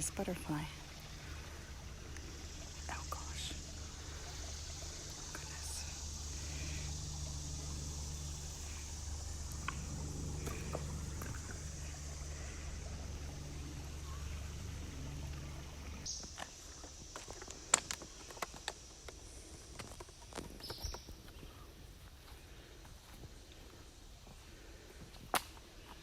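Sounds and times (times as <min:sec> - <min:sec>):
high hiss: 0:00.0 - 0:19.8
low hum: 0:00.0 - 0:20.3
footsteps on creek stones: 0:16.1 - 0:26.0.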